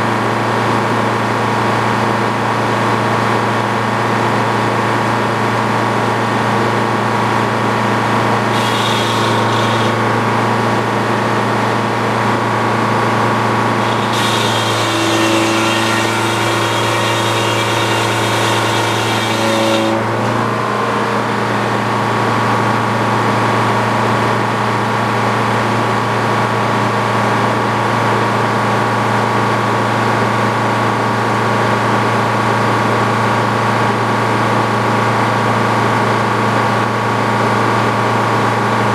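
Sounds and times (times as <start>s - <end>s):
sawmill engine running: 0.1s - 27.9s
circular saw cutting log: 7.4s - 23.8s.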